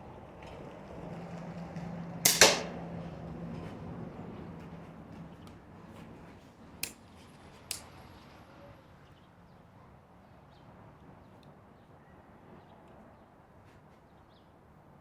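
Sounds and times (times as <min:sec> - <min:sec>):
crossbow shot tail: 0:02.3 - 0:02.8.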